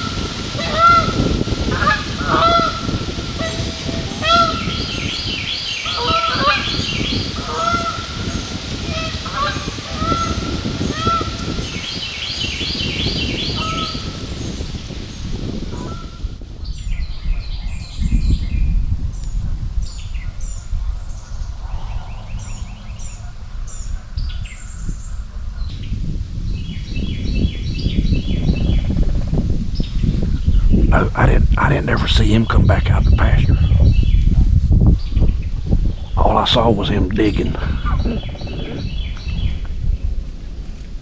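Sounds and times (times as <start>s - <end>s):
larger bird calling: 0.0s - 16.3s
songbirds singing: 0.0s - 31.0s, 31.8s - 40.2s
low rumble: 30.8s - 41.0s.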